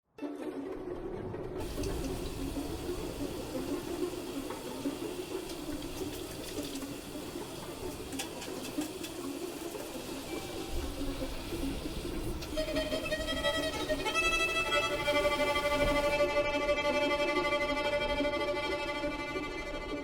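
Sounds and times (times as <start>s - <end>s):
running water: 1.6s - 16.2s.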